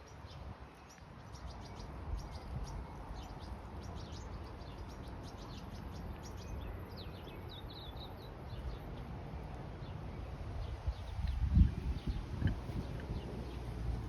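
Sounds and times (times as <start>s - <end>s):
small birds chirping: 0.0s - 14.0s
steady low rumble: 8.2s - 14.0s.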